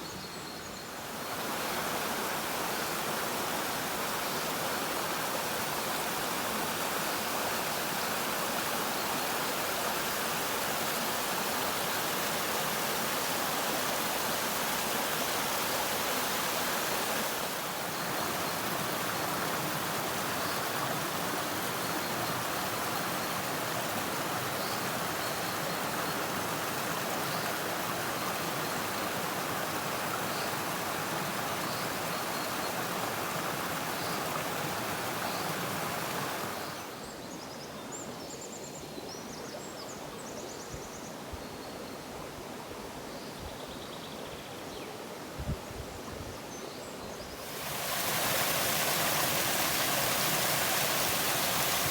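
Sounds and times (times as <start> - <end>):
forest stream rushing: 0.0 - 51.9.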